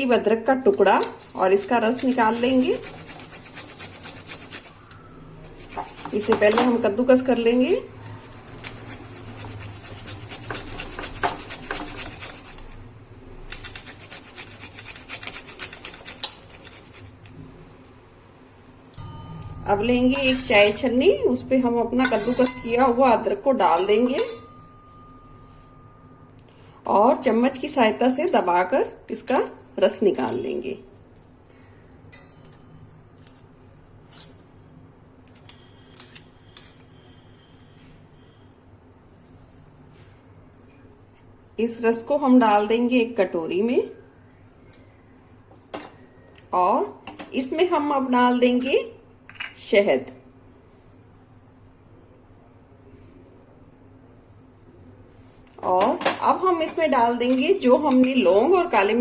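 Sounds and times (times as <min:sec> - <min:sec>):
spoon scraping tea strainer: 0:01.0 - 0:06.9, 0:08.1 - 0:12.8, 0:13.5 - 0:17.2, 0:35.3 - 0:37.1
ginger rasping on hand grater: 0:01.2 - 0:04.8, 0:05.5 - 0:06.8, 0:08.2 - 0:12.8, 0:13.5 - 0:17.2.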